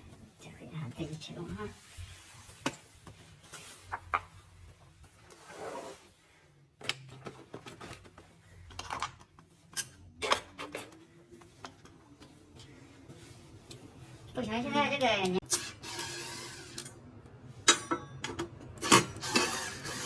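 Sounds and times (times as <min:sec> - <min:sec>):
rubbing and rustling: 0:00.2 - 0:06.4.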